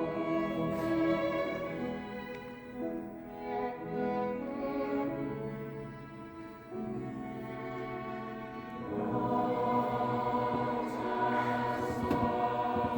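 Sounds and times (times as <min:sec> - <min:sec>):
choir singing sustained chords: 0:00.0 - 0:12.9.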